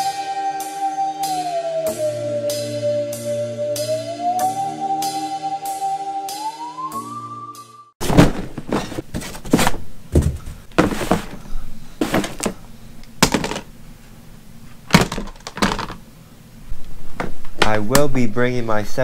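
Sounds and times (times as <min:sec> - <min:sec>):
irregular thuds and knocks: 0:08.0 - 0:12.6.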